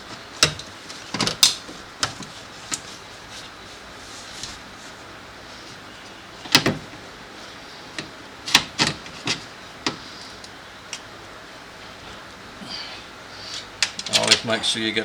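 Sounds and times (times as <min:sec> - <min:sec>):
sharp clicks and knocks of parts: 0:00.0 - 0:02.9, 0:06.4 - 0:07.0, 0:07.9 - 0:11.1, 0:13.5 - 0:14.6.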